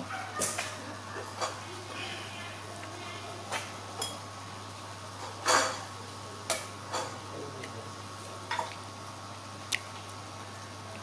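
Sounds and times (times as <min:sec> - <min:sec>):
dishes and utensils clinking: 0:00.4 - 0:01.6, 0:03.5 - 0:04.3, 0:05.2 - 0:05.9, 0:06.5 - 0:07.2.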